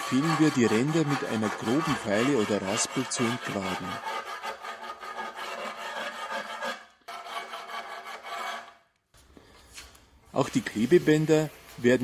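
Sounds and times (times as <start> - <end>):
file rasping on concrete: 0.0 - 8.8.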